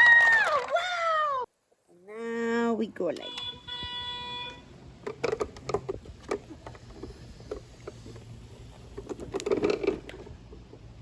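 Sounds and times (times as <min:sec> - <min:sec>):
plastic toys clicking and knocking: 0:05.0 - 0:11.0.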